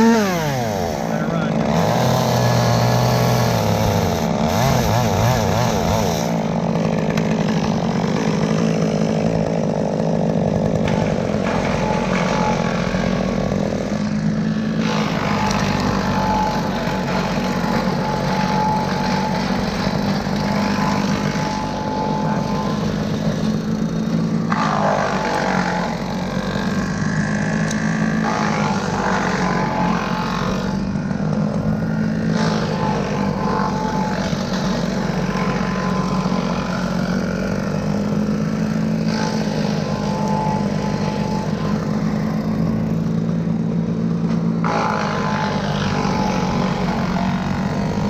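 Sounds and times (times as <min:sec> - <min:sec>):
small gasoline engine running: 0:00.0 - 0:48.0.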